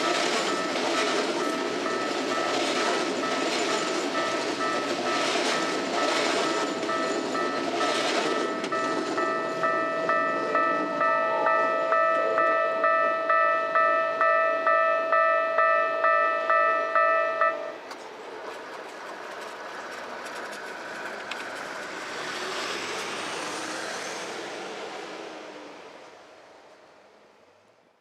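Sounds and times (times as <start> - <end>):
level crossing warning bell: 0.0 - 17.8.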